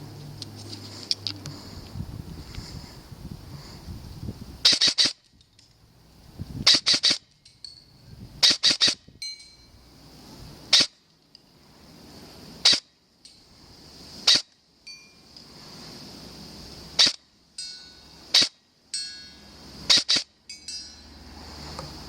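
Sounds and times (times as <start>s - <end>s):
airsoft gun shots: 4.6s - 5.2s, 6.6s - 7.3s, 8.4s - 9.0s, 10.7s - 11.0s, 12.6s - 12.9s, 17.0s - 17.2s, 18.3s - 18.6s, 19.9s - 20.3s
metallic ring from target: 17.6s - 18.2s, 18.9s - 21.3s.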